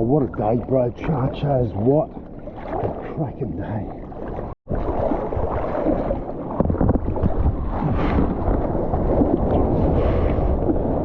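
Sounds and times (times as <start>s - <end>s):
rushing splashing water: 0.4s - 11.0s
wind buffeting microphone: 0.6s - 11.0s.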